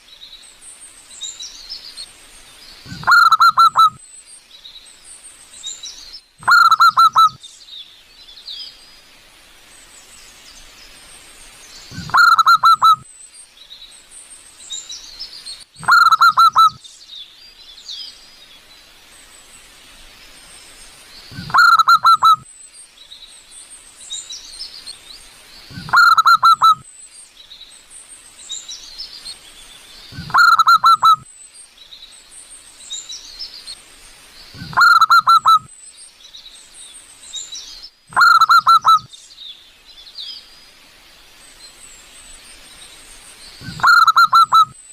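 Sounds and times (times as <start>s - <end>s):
small birds chirping: 0.0s - 44.9s
dove cooing: 2.9s - 4.0s, 6.4s - 7.4s, 11.9s - 13.0s, 15.8s - 16.8s, 21.3s - 22.4s, 25.7s - 26.8s, 30.2s - 31.2s, 34.6s - 35.7s, 43.6s - 44.7s.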